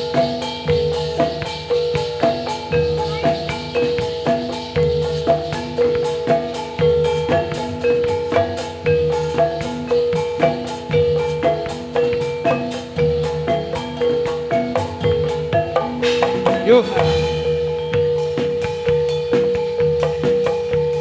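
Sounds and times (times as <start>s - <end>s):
metallophones playing melody: 0.0s - 21.0s
low drum beat: 14.8s - 19.1s.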